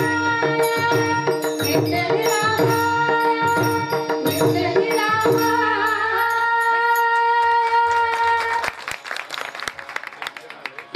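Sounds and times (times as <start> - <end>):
drum accompaniment: 0.0 - 7.8
woman singing devotional song: 0.0 - 8.8.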